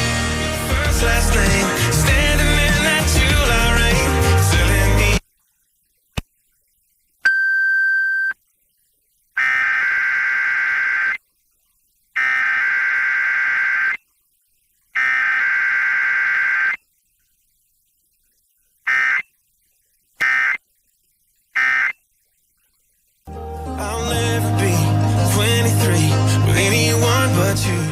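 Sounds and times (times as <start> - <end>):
steady beep: 7.3 - 8.4
harsh buzzing data bursts: 9.4 - 11.2, 12.2 - 14.0, 15.0 - 16.8.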